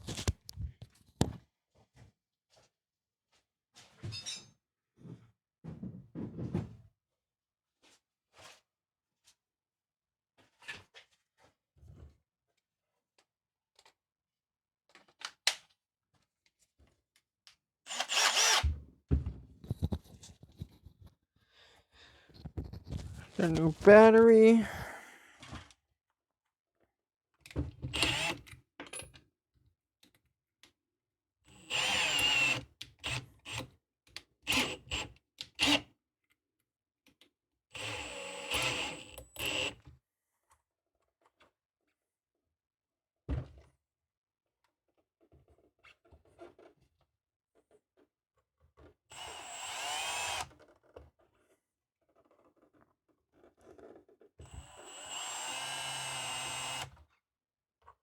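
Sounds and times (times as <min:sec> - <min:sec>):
cordless drill whirring: 0:17.9 - 0:18.7, 0:28.0 - 0:28.4, 0:31.6 - 0:33.2, 0:37.8 - 0:39.7, 0:49.1 - 0:50.5, 0:54.4 - 0:57.0.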